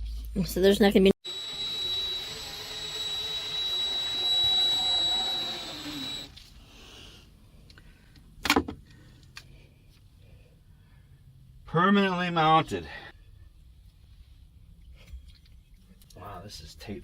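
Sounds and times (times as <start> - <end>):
electric motor whining: 1.2 - 6.4.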